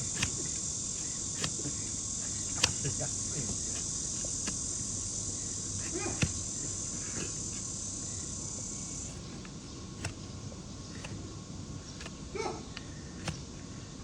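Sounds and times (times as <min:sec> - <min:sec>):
insect buzzing: 0:00.0 - 0:14.0
sharp clicks: 0:02.5 - 0:02.9, 0:12.8 - 0:13.4.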